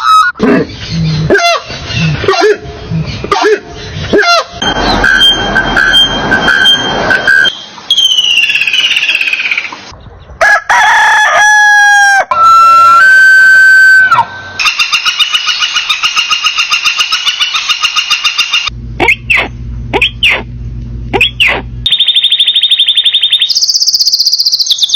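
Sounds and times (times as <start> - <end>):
loud pitched animal calls: 0.0 - 9.7, 12.7 - 20.5, 21.1 - 24.9
fast repeating trill: 4.2 - 9.4, 21.2 - 24.7
rooster crowing: 10.4 - 14.3.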